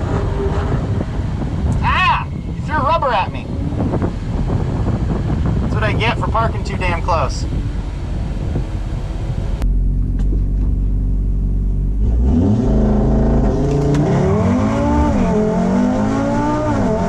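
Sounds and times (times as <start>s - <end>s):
car engine revving and accelerating: 0.0s - 1.8s, 7.5s - 17.0s.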